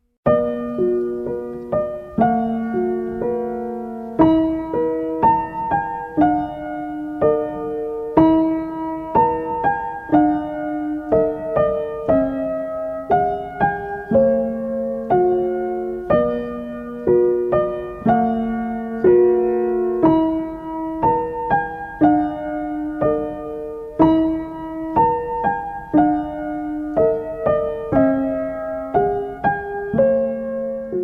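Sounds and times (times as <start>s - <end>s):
slow solo piano: 0.0s - 31.0s.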